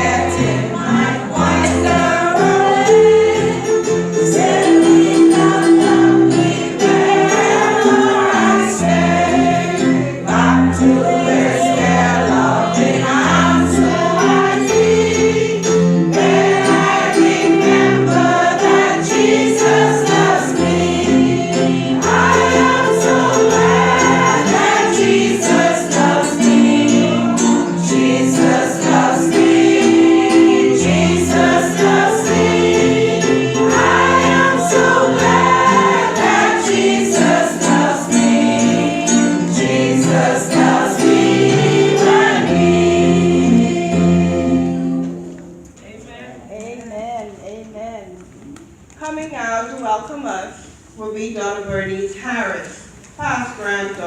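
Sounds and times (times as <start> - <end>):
instrumental accompaniment held notes: 0.0 - 45.8
group singing a hymn: 0.0 - 46.1
jingling percussion beat: 10.3 - 43.3.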